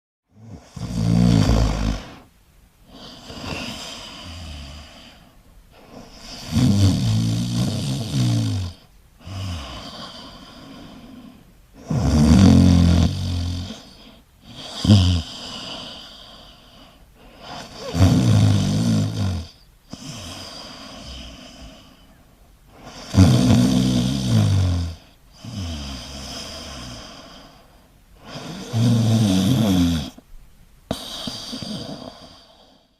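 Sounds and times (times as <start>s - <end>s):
person snoring: 0.4s - 2.3s, 2.9s - 5.2s, 5.8s - 22.0s, 22.7s - 30.2s, 30.9s - 32.9s
quiet breath: 1.6s - 6.6s, 8.7s - 11.9s, 13.3s - 18.0s, 19.0s - 23.2s, 24.9s - 28.8s, 29.6s - 32.9s.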